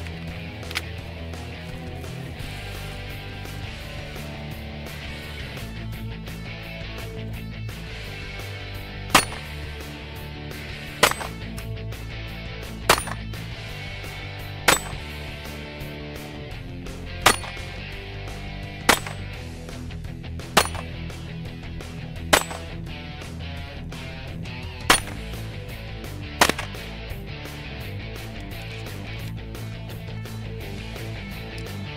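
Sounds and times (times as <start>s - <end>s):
background music: 0.0s - 31.9s
pistol shots: 9.1s - 9.8s, 11.0s - 11.5s, 12.8s - 13.3s, 14.7s - 15.2s, 17.2s - 17.8s, 18.8s - 19.4s, 20.6s - 21.0s, 22.3s - 22.8s, 24.9s - 25.4s, 26.4s - 26.9s.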